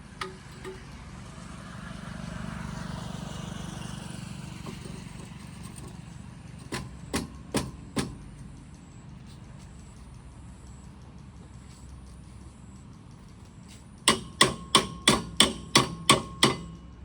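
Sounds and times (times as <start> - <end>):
vehicle passing: 0.0 - 14.0
sharp knocks: 6.6 - 8.3, 14.1 - 16.8.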